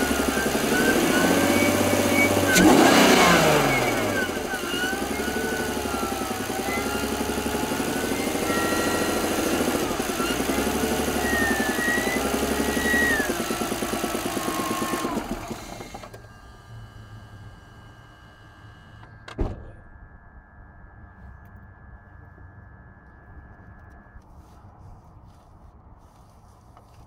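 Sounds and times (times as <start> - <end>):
wavering whistle: 0.0 - 16.0
rapid engine knock: 0.0 - 16.2
car engine idling: 0.0 - 20.4.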